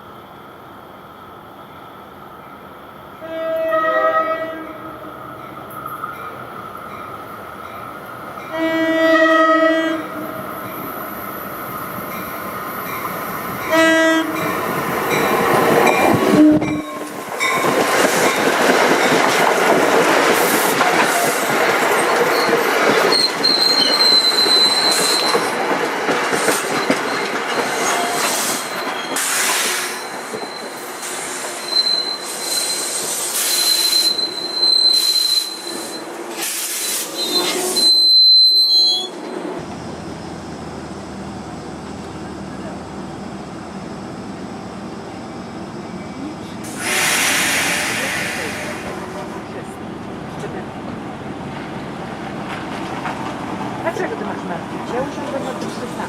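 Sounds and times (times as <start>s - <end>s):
train wheels rumbling on rail: 0.0s - 56.0s
train horn blasts: 3.2s - 5.0s, 8.5s - 10.4s, 13.7s - 14.5s, 16.3s - 17.1s
wheel squeal: 22.3s - 25.6s, 26.4s - 39.3s.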